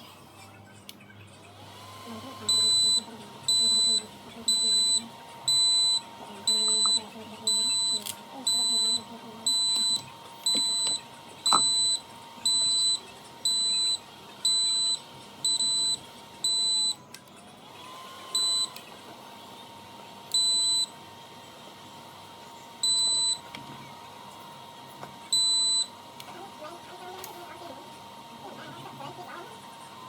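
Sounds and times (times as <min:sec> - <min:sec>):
high-pitched buzzer beeps: 0:02.4 - 0:17.1, 0:18.3 - 0:18.8, 0:20.3 - 0:21.0, 0:22.8 - 0:23.5, 0:25.3 - 0:25.9.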